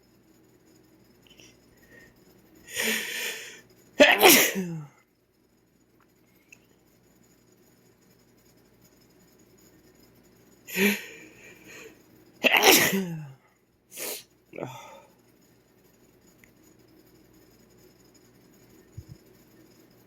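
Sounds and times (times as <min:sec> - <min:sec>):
man sneezing: 0:04.0 - 0:04.9, 0:12.4 - 0:13.3.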